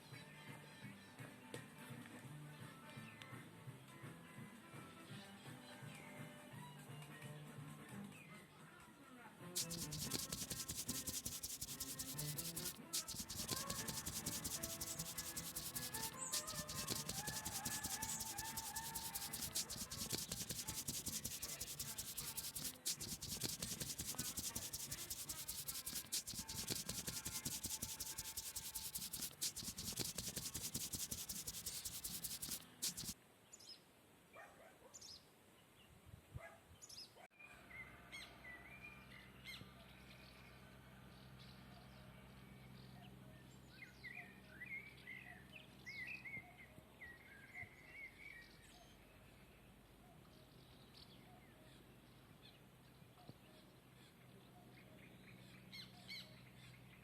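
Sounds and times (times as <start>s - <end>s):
scratchy rustling and scraping: 9.6s - 33.2s.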